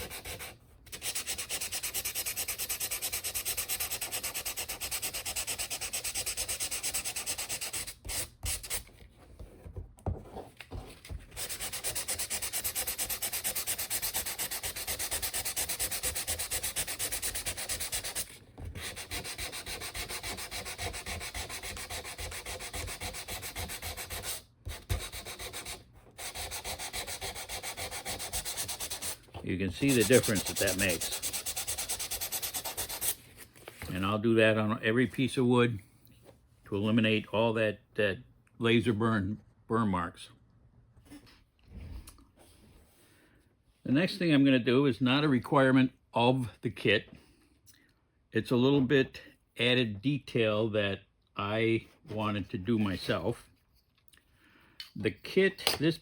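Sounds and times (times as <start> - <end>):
sandpaper rubbing on wood: 0.0 - 8.8, 11.4 - 33.2.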